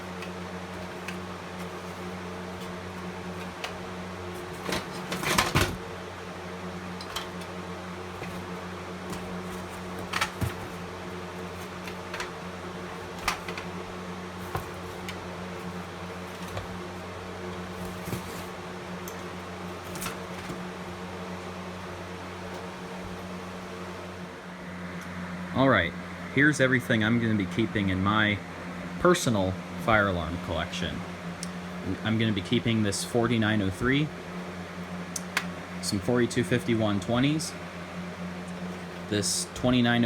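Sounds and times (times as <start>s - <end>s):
devices clicking and knocking: 0.0s - 5.8s, 7.0s - 7.5s, 8.1s - 16.9s
electrical room hum: 0.0s - 40.0s.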